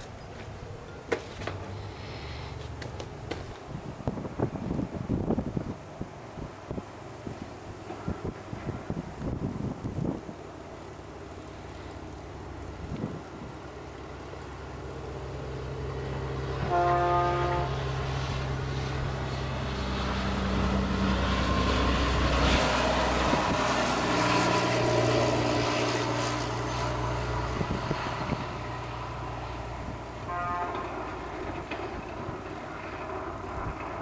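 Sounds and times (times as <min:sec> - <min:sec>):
diesel vehicle engine rumble: 0:00.0 - 0:34.0
vehicle horn: 0:16.6 - 0:17.8, 0:30.2 - 0:31.0.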